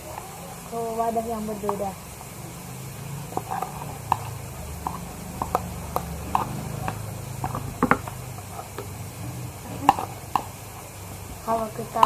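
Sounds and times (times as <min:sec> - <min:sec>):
steady low hum: 0:00.0 - 0:12.0
spoon and plastic containers tapping: 0:03.3 - 0:09.0, 0:09.8 - 0:10.6.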